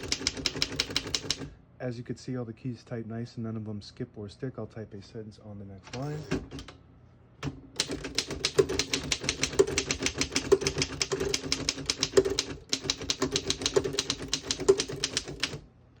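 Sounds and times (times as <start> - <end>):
manual typewriter typing: 0.0 - 1.5, 5.9 - 6.7, 7.4 - 15.6.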